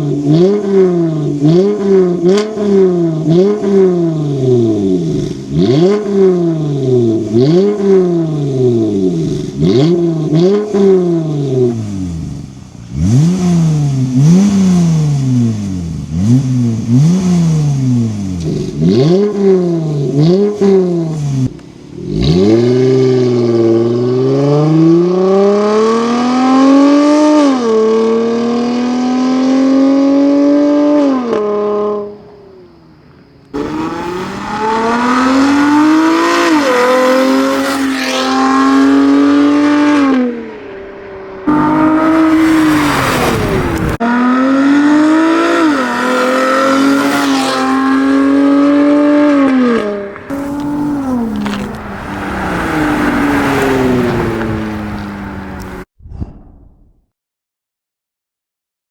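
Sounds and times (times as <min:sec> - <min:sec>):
car engine accelerating hard: 0:00.0 - 0:32.0, 0:33.6 - 0:55.9
rushing noise: 0:41.3 - 0:48.8, 0:50.1 - 0:55.8.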